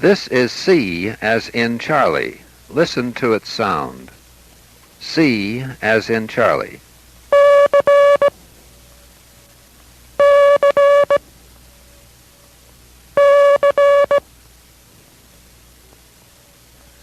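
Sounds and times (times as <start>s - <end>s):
morse code tone: 7.3s - 8.3s, 10.2s - 11.2s, 13.2s - 14.2s.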